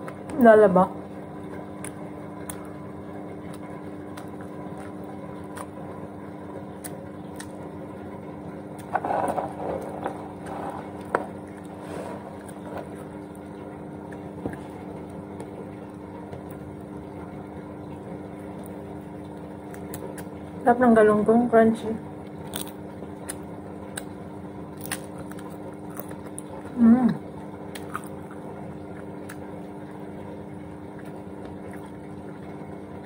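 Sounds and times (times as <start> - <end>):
washing machine motor hum: 0.0 - 33.0
person chewing crunchy food: 3.4 - 5.8, 8.7 - 15.1, 22.4 - 26.8, 27.7 - 29.5.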